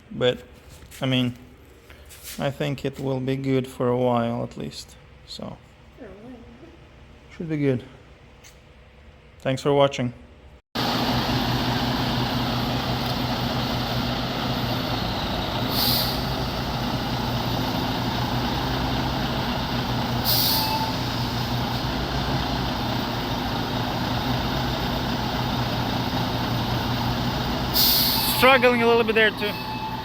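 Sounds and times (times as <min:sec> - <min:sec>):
truck diesel engine running: 0:10.8 - 0:30.0
air brake hiss: 0:15.6 - 0:16.8, 0:20.1 - 0:21.4, 0:27.7 - 0:28.4.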